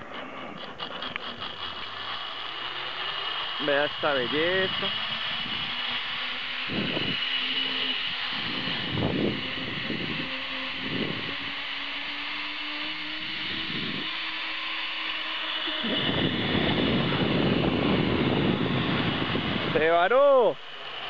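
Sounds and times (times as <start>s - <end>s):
zip-line pulleys whirring on cable: 0.0s - 21.0s
wind gusts on microphone: 3.6s - 11.8s, 13.2s - 14.2s, 15.8s - 20.6s.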